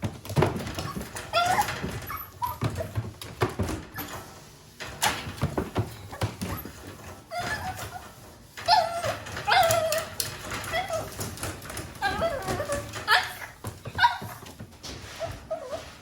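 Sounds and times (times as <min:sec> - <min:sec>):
puppy whining: 0:00.6 - 0:03.0, 0:06.0 - 0:16.0.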